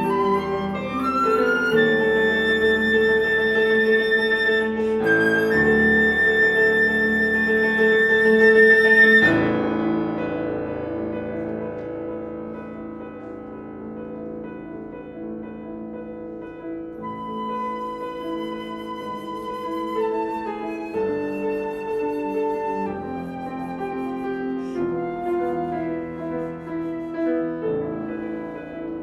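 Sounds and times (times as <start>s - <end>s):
flute: 0.0s - 10.5s, 16.5s - 29.0s
piano: 0.0s - 29.0s.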